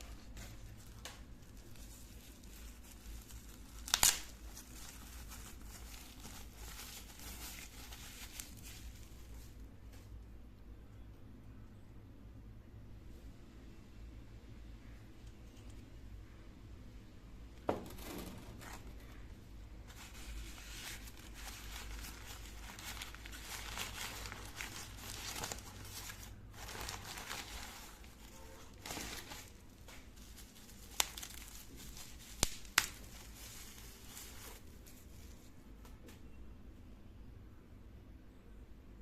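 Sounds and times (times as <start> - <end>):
packaging crinkling and tearing: 0.0 - 9.5, 19.8 - 35.3.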